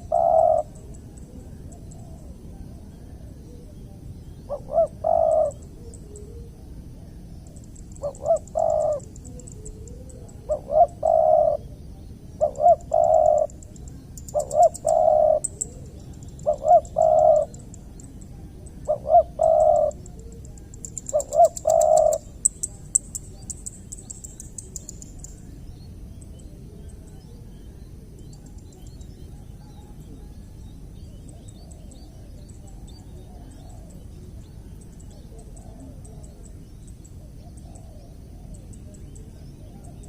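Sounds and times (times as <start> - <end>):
dove cooing: 0.0 - 11.8, 12.4 - 23.4, 31.3 - 36.5, 37.1 - 40.0
high ticking chirp: 7.4 - 26.4.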